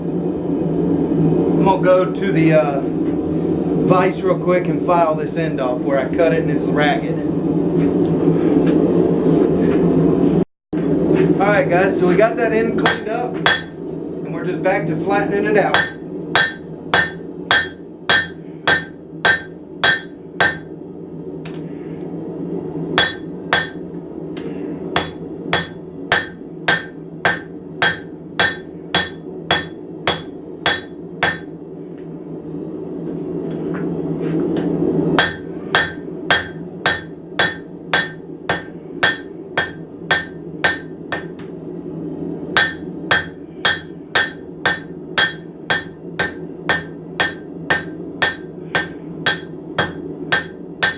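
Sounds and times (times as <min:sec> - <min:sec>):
hammer striking anvil: 0:12.8 - 0:14.0, 0:15.7 - 0:20.7, 0:23.0 - 0:24.0, 0:25.0 - 0:31.6, 0:35.2 - 0:41.4, 0:42.6 - 0:50.9.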